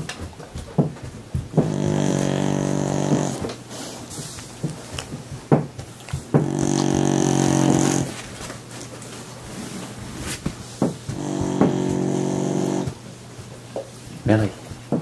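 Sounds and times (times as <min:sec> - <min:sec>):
animal snoring: 0:01.5 - 0:04.4, 0:06.0 - 0:08.2, 0:11.1 - 0:13.1.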